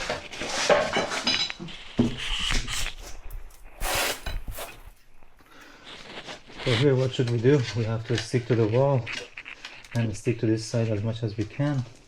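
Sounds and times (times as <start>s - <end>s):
floor planks rubbing and scraping: 0.0s - 5.0s.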